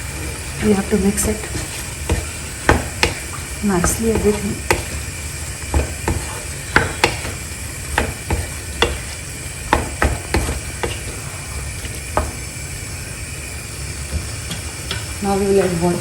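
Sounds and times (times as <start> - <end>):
curry simmering: 0.0 - 16.0
spoon scraping a pan: 5.7 - 7.4.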